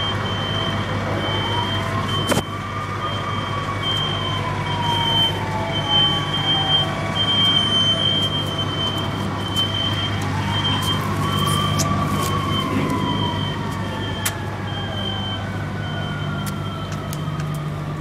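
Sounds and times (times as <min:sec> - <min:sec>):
smoke detector alarms beeping: 0:00.0 - 0:02.5, 0:03.1 - 0:17.0
siren slow wail: 0:00.0 - 0:18.0
low engine hum: 0:04.4 - 0:18.0.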